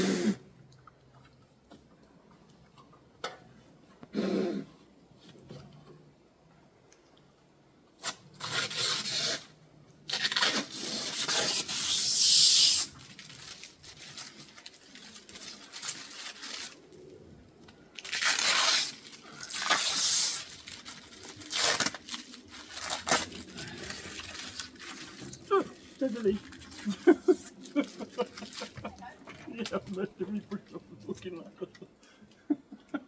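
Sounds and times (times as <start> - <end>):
plastic film peeling off: 10.1 - 16.9, 18.0 - 28.8.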